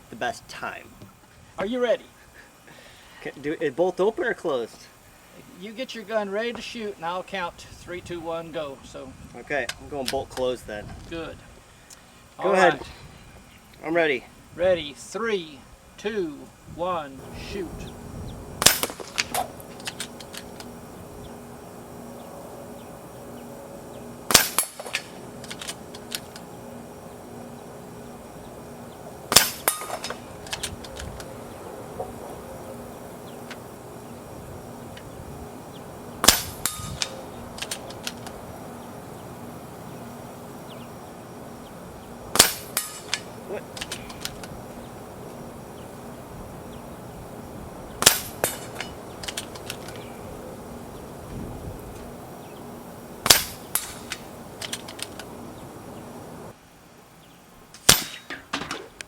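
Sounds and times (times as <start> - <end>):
air rifle cracks: 18.6 - 20.8, 24.3 - 26.5, 29.3 - 31.4, 36.2 - 38.4, 42.3 - 44.6, 48.0 - 50.1, 53.2 - 55.3, 57.8 - 59.0.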